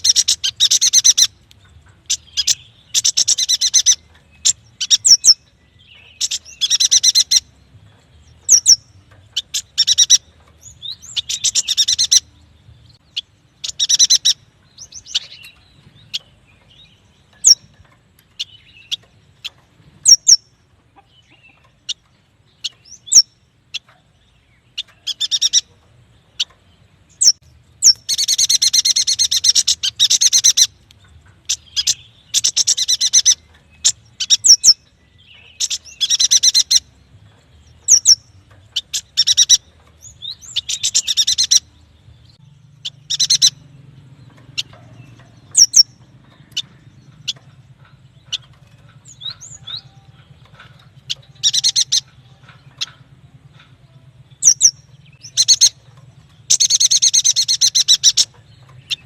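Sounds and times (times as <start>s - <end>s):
bird high chattering: 0.0s - 1.4s, 2.0s - 7.6s, 8.4s - 12.3s, 13.2s - 16.4s, 24.7s - 25.8s, 27.2s - 30.8s, 31.4s - 36.9s, 37.8s - 41.8s, 42.8s - 43.6s, 44.4s - 59.0s.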